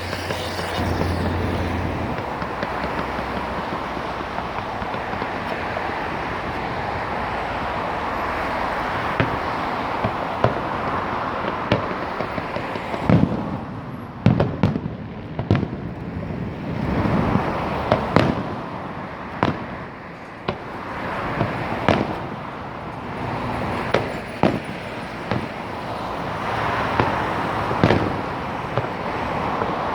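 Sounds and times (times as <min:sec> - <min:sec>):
fireworks bangs: 0:00.0 - 0:29.9
fireworks rushing noise: 0:00.0 - 0:29.9.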